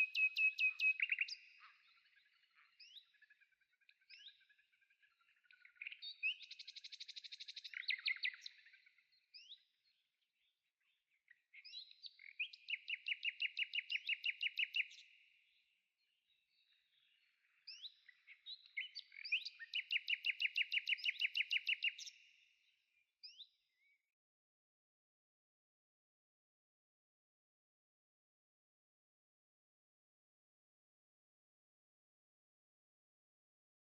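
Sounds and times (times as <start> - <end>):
songbird trilling: 0.0 - 1.5.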